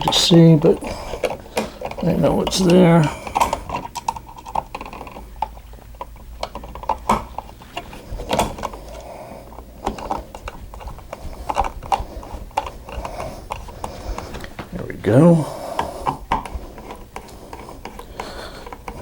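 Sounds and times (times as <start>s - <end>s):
small metal clicks and scrapes: 0.0s - 14.5s.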